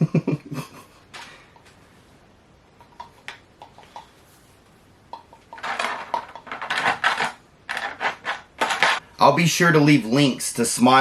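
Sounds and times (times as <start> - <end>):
plastic packaging clicking and clattering: 5.4 - 9.0
packaging rattling and rustling: 5.5 - 9.0.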